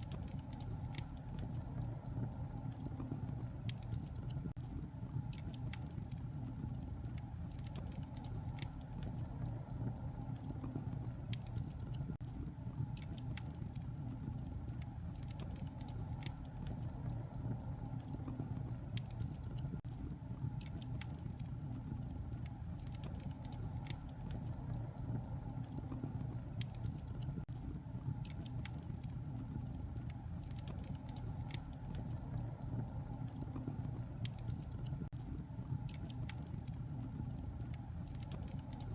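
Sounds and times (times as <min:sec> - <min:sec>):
fire popping and snapping: 0:00.0 - 0:38.9
low rumble of flames: 0:00.0 - 0:38.9
wood fire crackling: 0:00.0 - 0:38.9.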